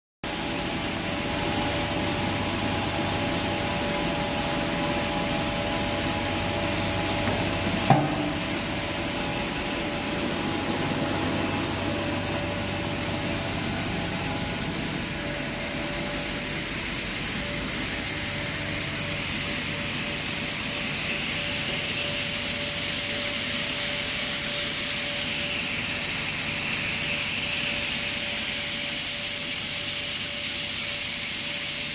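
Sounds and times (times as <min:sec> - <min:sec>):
sharp knock: 0:07.8 - 0:08.5.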